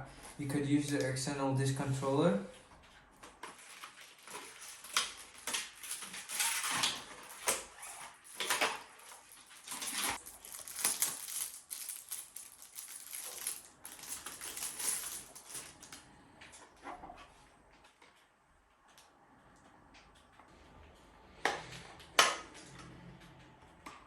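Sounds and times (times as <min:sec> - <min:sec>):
scraping and rustling: 0:03.4 - 0:16.0
small plastic and metal parts rattling: 0:03.5 - 0:16.0.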